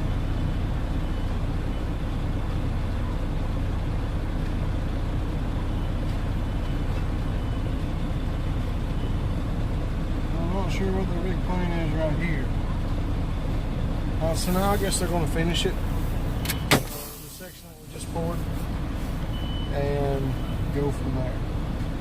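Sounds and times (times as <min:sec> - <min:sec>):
diesel engine rumbling: 0:00.0 - 0:22.0.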